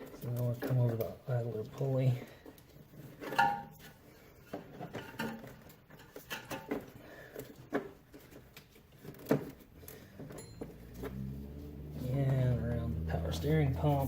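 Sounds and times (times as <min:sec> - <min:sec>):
rubber belt knocks and rubbing: 0:03.0 - 0:11.4.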